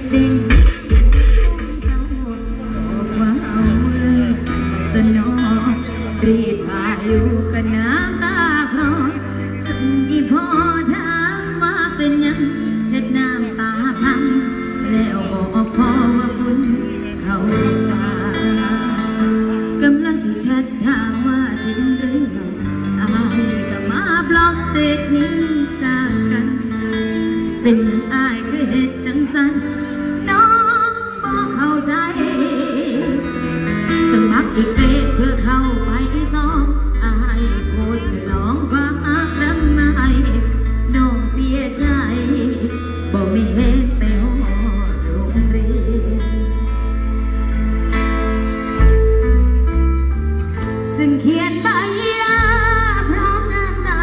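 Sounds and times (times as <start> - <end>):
deep bass: 0.0 - 8.2
instrumental accompaniment: 0.0 - 54.0
music with singing voice: 0.0 - 54.0.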